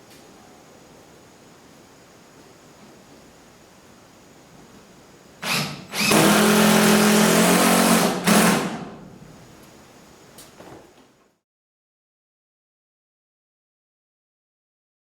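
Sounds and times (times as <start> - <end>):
power drill running: 5.4 - 8.9.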